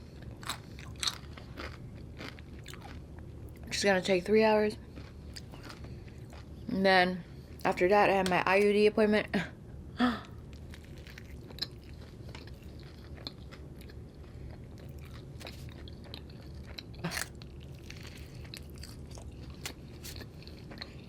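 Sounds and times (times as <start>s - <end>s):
person chewing food: 0.1s - 3.6s, 4.8s - 6.7s, 10.3s - 21.0s.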